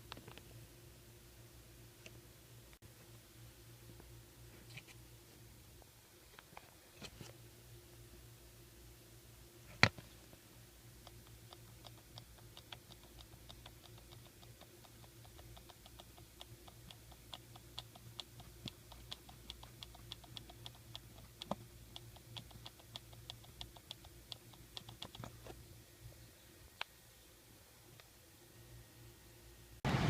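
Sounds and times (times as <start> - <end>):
low steady hum: 0.0 - 30.0
air conditioning rapid clicking: 10.8 - 25.6.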